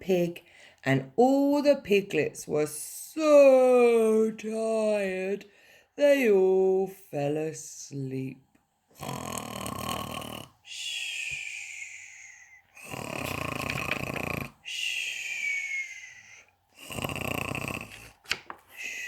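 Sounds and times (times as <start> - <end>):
person cartoon snoring: 9.0 - 18.2.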